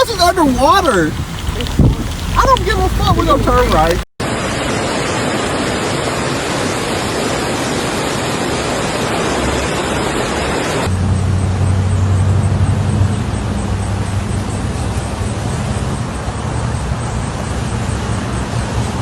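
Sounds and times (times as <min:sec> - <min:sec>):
vehicle engine hum and road noise: 0:00.0 - 0:04.1, 0:10.9 - 0:19.0
heavy rushing spray noise: 0:00.0 - 0:10.9.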